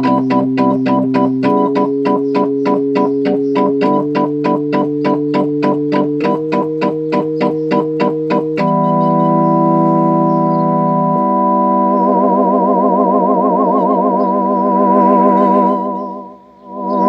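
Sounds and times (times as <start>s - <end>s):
synthesizer chord stabs: 0.0s - 17.0s.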